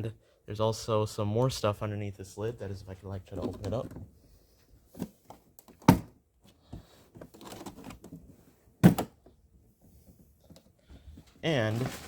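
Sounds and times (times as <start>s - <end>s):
handling and rustling: 3.2s - 12.0s.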